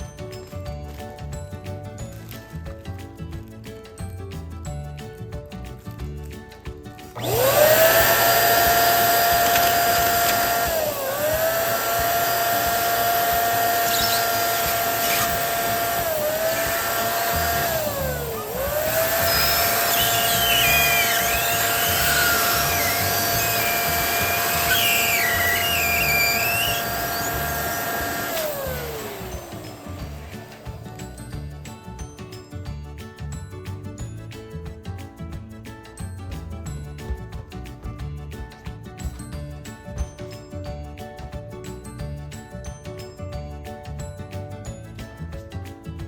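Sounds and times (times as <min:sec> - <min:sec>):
small electric motor running: 0:07.1 - 0:31.1
squeaky high chirps: 0:18.4 - 0:27.4.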